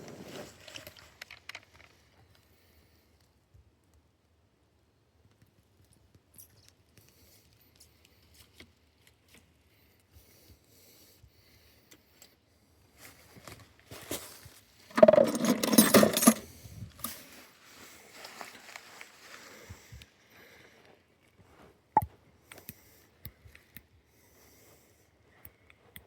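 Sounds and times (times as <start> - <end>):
jangling rattling clatter: 14.9 - 17.2.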